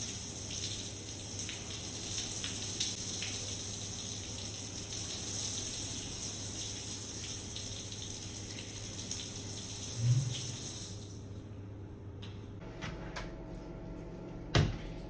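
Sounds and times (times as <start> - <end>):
water running from a tap: 0.0 - 11.3.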